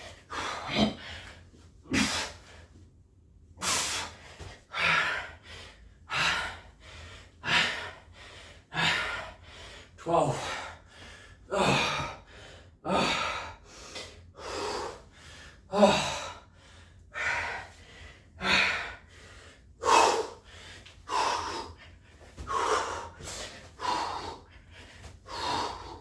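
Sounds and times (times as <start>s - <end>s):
man breathing hard: 0.0s - 2.8s, 3.6s - 26.0s.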